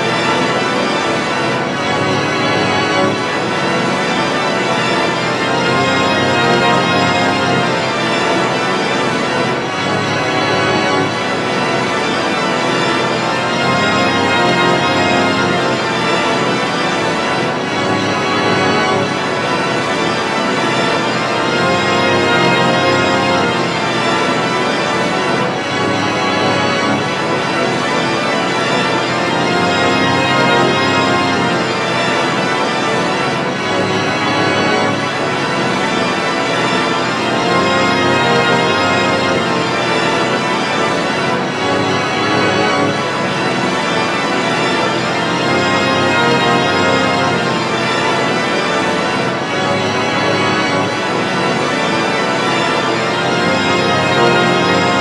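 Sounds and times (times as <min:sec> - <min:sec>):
organ-like held chords: 0:00.0 - 0:55.0.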